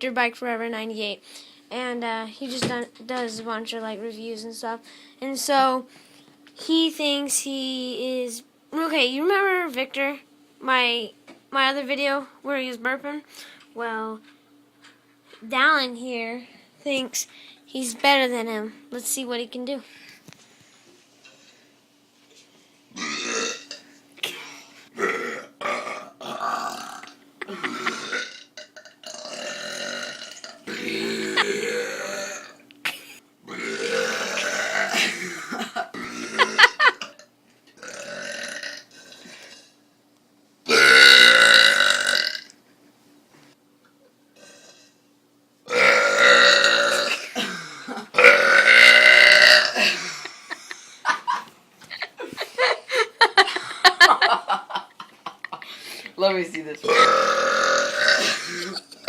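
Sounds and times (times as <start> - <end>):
person burping: 23.0 - 39.7, 40.7 - 42.5, 45.7 - 50.8, 56.8 - 59.0.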